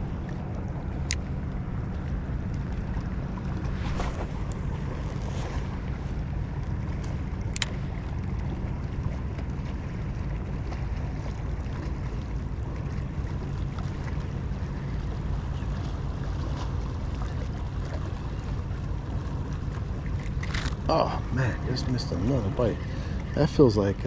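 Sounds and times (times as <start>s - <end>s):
wind buffeting microphone: 0.0s - 11.6s.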